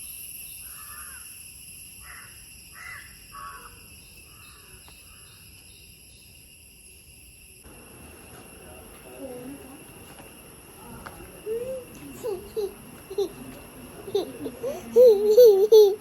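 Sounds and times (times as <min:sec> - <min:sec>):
crow cawing: 0:00.6 - 0:01.2, 0:02.0 - 0:05.2.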